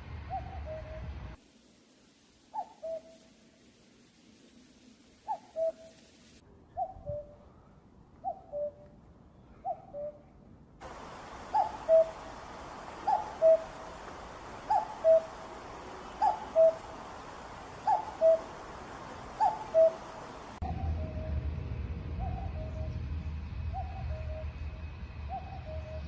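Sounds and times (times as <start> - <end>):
steady hiss: 1.3 - 6.4, 10.8 - 20.6
cuckoo calling: 2.5 - 3.3, 5.2 - 6.0, 8.2 - 8.9, 10.8 - 21.3.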